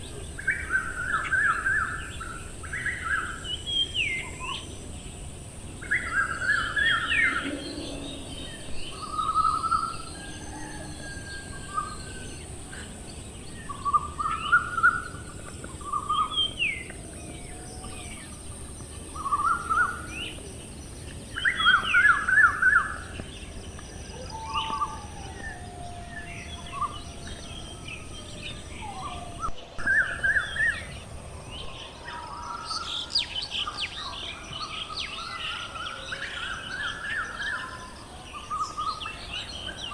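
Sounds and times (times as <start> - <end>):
outdoor background hiss: 0.0 - 39.9
birds chirping and calling: 5.6 - 16.6, 19.1 - 39.9.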